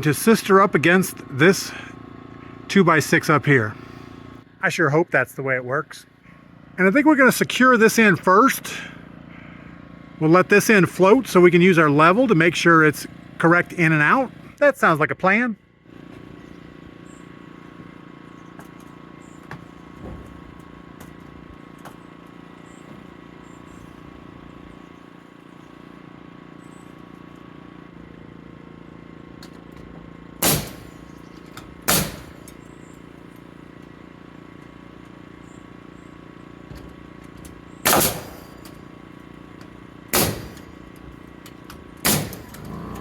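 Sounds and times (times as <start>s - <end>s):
nail gun firing into wood: 30.4s - 32.6s, 36.8s - 39.0s, 40.1s - 43.0s.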